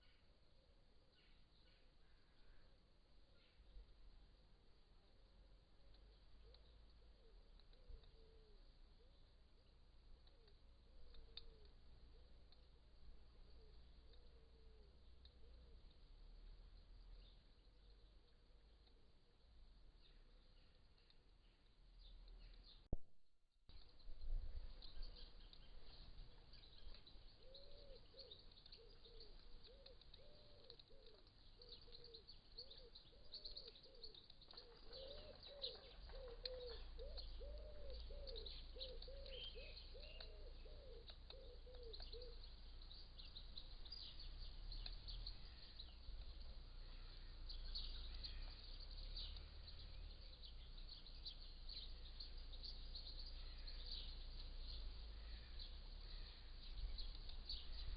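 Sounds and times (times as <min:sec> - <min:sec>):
small birds chirping: 0:00.0 - 0:23.0, 0:23.7 - 0:57.9
pigeon cooing: 0:27.4 - 0:42.4.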